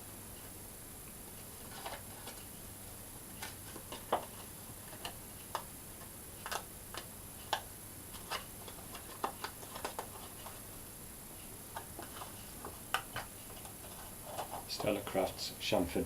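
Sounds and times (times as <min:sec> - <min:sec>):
card box being folded: 0:01.6 - 0:02.5, 0:03.3 - 0:10.6.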